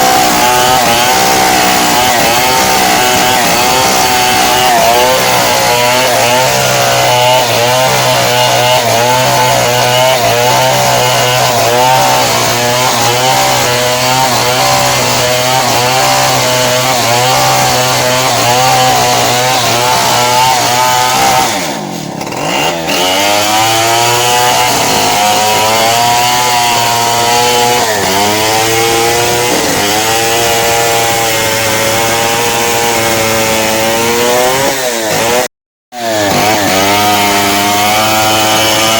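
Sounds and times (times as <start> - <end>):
chainsaw cutting a log: 0.0 - 38.9.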